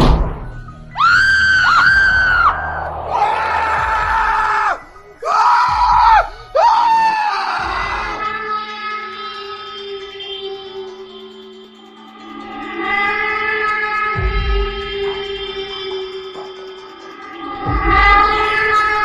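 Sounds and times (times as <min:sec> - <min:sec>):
shrill screams: 0:01.0 - 0:08.4.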